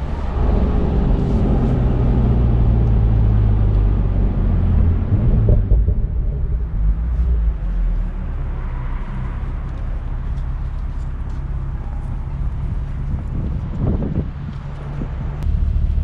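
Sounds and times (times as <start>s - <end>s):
sharp exhaust pops: 5.2s - 6.7s
car engine revving: 15.4s - 16.0s.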